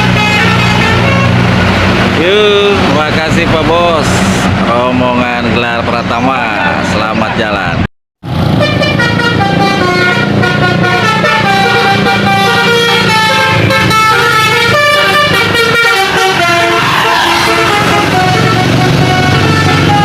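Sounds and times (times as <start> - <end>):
multi-tone electric bus horn melody: 0.0 - 1.6, 8.4 - 20.0
bus engine running: 0.0 - 5.2, 8.2 - 20.0.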